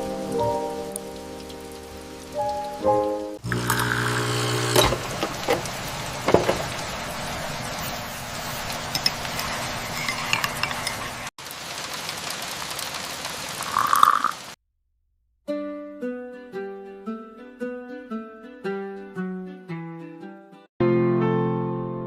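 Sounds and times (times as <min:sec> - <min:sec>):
food sizzling in a pan: 0:03.3 - 0:14.6
utensils and dishes clinking: 0:04.8 - 0:06.8, 0:08.8 - 0:11.3.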